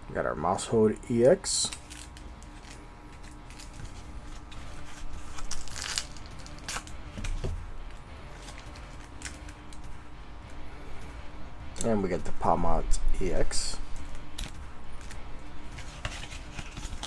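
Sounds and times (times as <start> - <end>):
card packaging crinkling: 1.6 - 9.9, 13.9 - 17.0.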